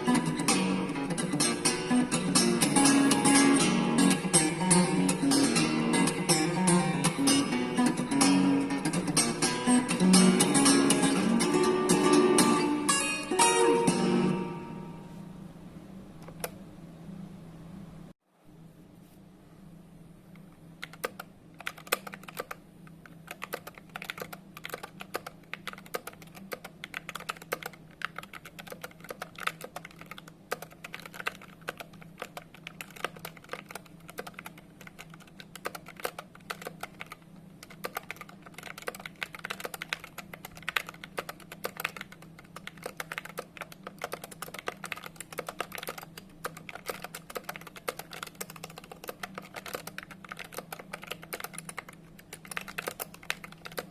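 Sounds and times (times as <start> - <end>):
steady low hum: 0.0 - 53.9
mechanical keyboard typing: 20.8 - 53.9.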